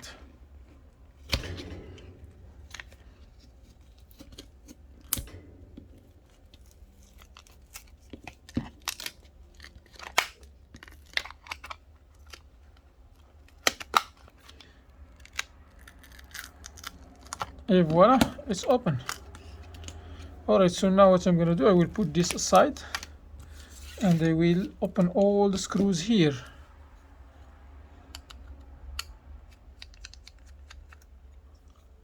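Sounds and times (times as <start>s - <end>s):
plastic clicks and crackles: 2.6s - 20.3s, 28.1s - 31.9s.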